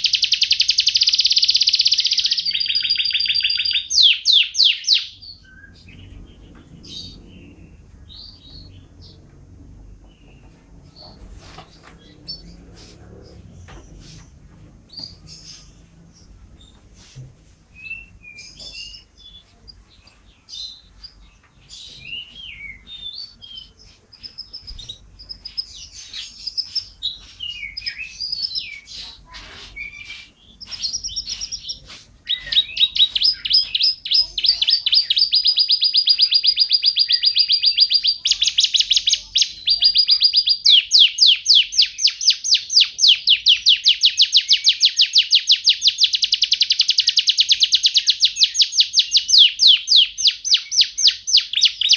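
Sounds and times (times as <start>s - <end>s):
fast canary trill: 0.0s - 9.2s, 24.2s - 51.9s
canary singing: 0.0s - 14.3s, 17.7s - 51.9s.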